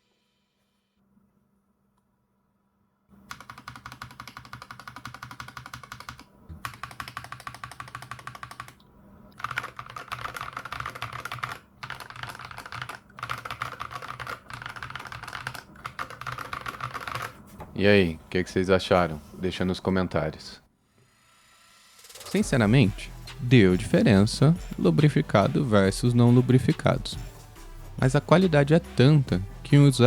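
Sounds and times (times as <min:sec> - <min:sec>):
mechanical keyboard typing: 0:03.3 - 0:08.8, 0:09.4 - 0:17.4.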